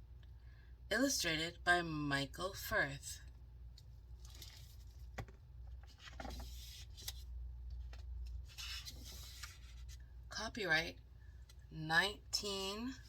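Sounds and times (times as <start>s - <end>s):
low steady hum: 0.0s - 13.0s
book pages rustling and clicking: 4.2s - 10.0s.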